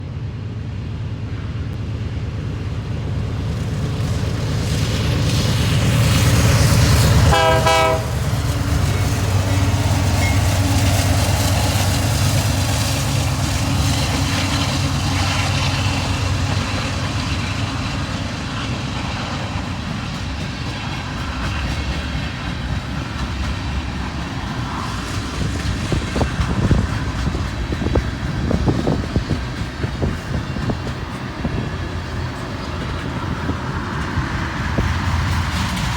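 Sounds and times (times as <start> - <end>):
diesel locomotives rumbling: 0.0 - 35.9
freight cars rolling by: 2.3 - 35.9
train horn blast: 7.2 - 10.7.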